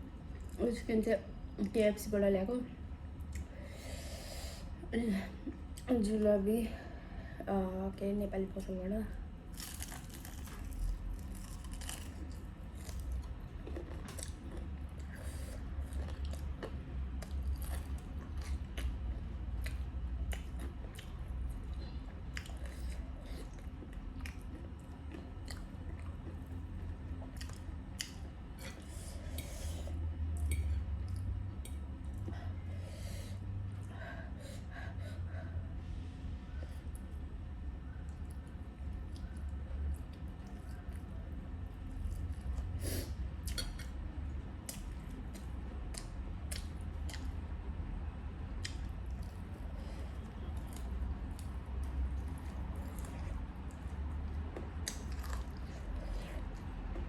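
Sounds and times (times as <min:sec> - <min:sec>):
low steady hum: 0:00.0 - 0:57.0
person chewing food: 0:09.5 - 0:32.3, 0:43.4 - 0:47.5, 0:48.5 - 0:57.0.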